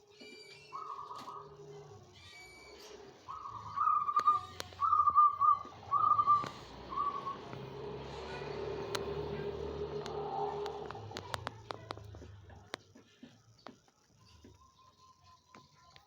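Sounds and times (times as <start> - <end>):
dove cooing whistled notes: 0.7 - 2.0, 2.6 - 11.1
sharp clicks: 4.1 - 4.9, 6.4 - 6.7, 8.8 - 9.3, 9.9 - 12.9.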